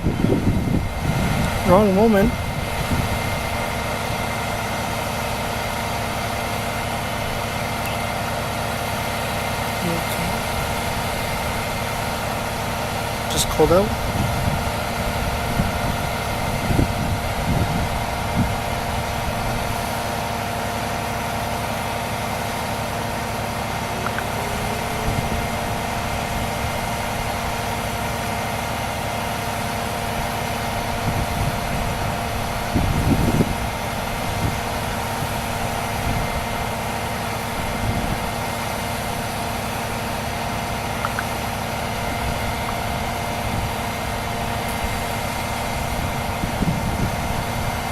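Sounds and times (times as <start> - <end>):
vehicle engine idling: 0.0 - 47.9.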